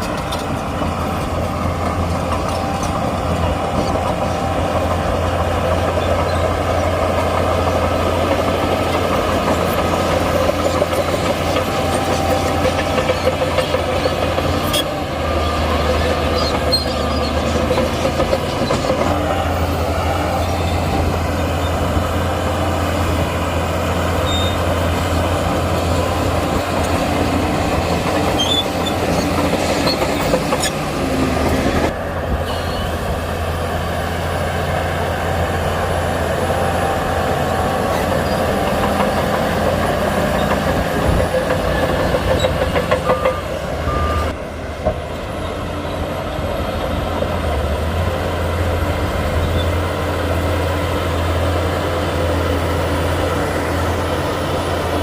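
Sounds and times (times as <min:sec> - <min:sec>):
heavy diesel engine drone: 0:00.0 - 0:55.0
steel tracks squealing and clanking: 0:00.0 - 0:55.0.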